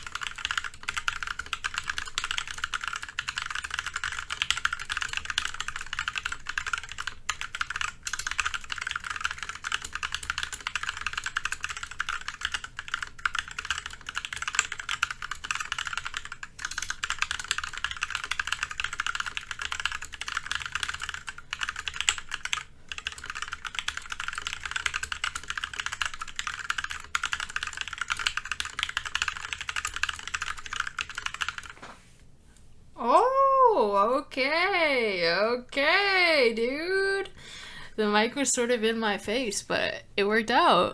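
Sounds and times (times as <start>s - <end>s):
fast typing on mechanical keyboard: 0.0s - 31.8s.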